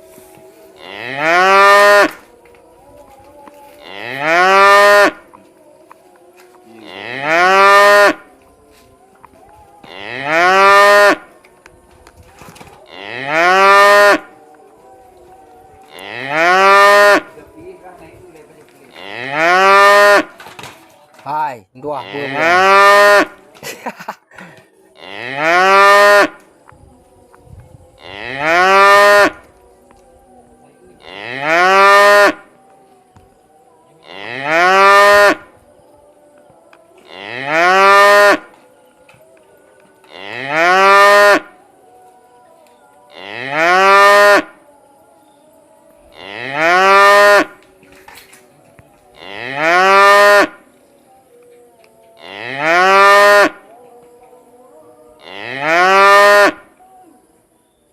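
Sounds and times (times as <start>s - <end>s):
cow mooing: 0.8s - 2.2s, 3.8s - 5.2s, 6.7s - 8.3s, 9.8s - 11.3s, 12.8s - 14.4s, 15.9s - 17.4s, 18.9s - 20.4s, 22.0s - 23.4s, 25.0s - 26.4s, 28.0s - 29.4s, 31.0s - 32.4s, 34.0s - 35.5s, 37.0s - 38.5s, 40.1s - 41.5s, 43.1s - 44.5s, 46.1s - 47.6s, 49.2s - 50.6s, 52.2s - 53.6s, 55.2s - 56.6s.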